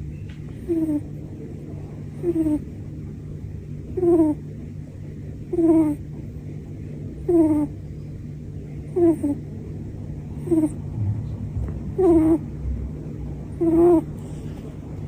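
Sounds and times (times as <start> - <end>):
cat snoring squeakily: 0.6 - 1.1, 2.1 - 2.7, 3.9 - 4.4, 5.5 - 6.0, 7.2 - 7.8, 8.9 - 9.5, 10.4 - 10.9, 11.9 - 12.5, 13.6 - 14.3.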